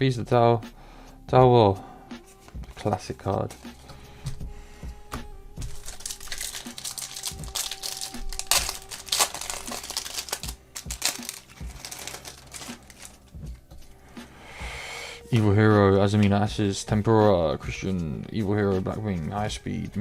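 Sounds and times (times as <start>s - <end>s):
foil wrapper crinkling: 5.6s - 13.4s.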